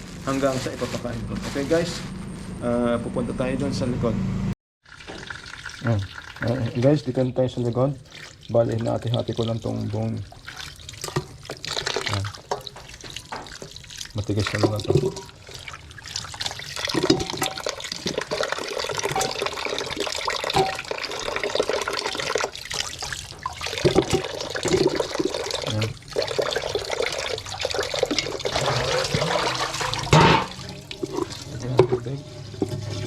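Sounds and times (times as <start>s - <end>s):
water running from a tap: 4.8s - 33.0s
clatter of things under water: 11.0s - 15.4s, 16.8s - 20.9s, 23.2s - 26.0s, 28.0s - 33.0s.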